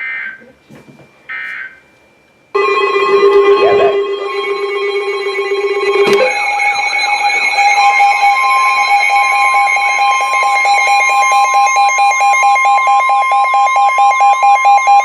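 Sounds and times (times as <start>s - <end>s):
rising and falling electronic sweeps: 2.6s - 13.0s
steady electronic alert tone: 2.6s - 13.5s
low beeping tone: 2.6s - 15.0s.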